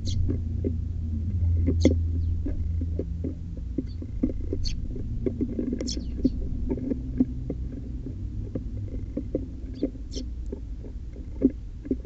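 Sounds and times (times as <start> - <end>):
birds pecking on hard surface: 0.0 - 12.0
high bird chirps: 3.8 - 4.8, 5.8 - 6.4, 9.7 - 10.3.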